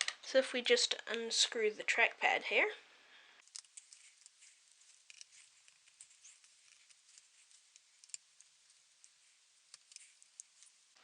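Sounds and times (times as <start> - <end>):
screwdriver clicking on small screws: 3.4 - 4.4.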